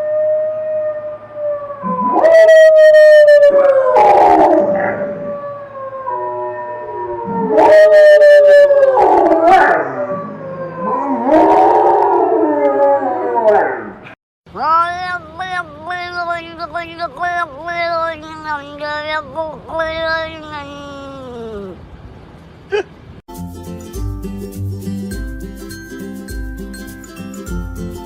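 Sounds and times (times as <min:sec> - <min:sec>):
dog howling: 0:01.8 - 0:14.0.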